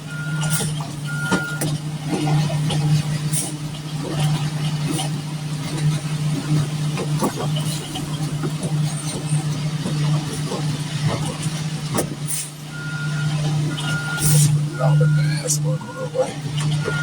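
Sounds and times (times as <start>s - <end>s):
diesel engine running: 0.0s - 17.0s
reversing beep: 0.1s - 1.7s, 12.7s - 17.0s.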